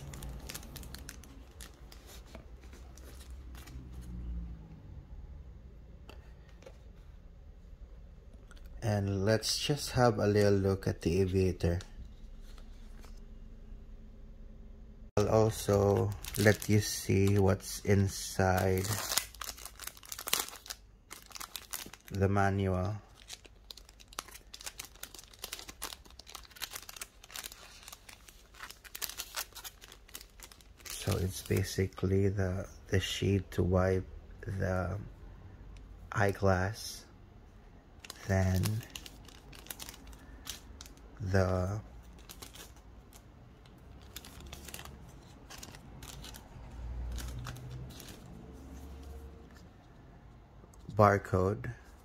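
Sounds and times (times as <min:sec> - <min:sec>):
packaging crinkling: 0:00.0 - 0:04.0, 0:15.2 - 0:32.0, 0:38.0 - 0:49.6.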